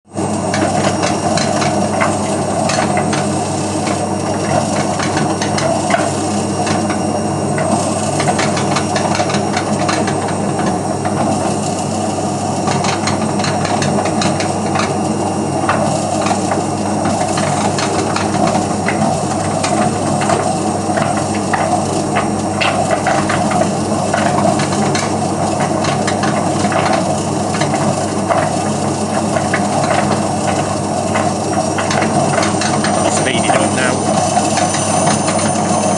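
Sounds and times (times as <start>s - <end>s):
washing machine humming: 0.1s - 35.9s
drum rattling and clicking: 0.5s - 7.0s, 15.7s - 35.6s.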